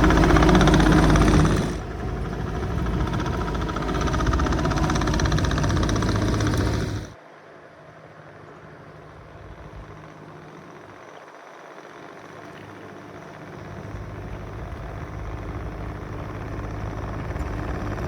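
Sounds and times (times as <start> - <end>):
loader diesel engine running: 0.0 - 7.2, 8.8 - 11.1, 12.0 - 18.0.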